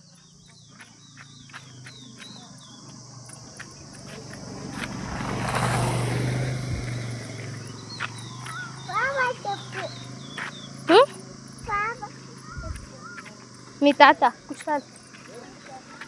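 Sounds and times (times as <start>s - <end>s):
short insect chirps: 0.0s - 16.0s
vehicle passing: 0.1s - 16.0s
high insect buzz: 2.6s - 15.2s.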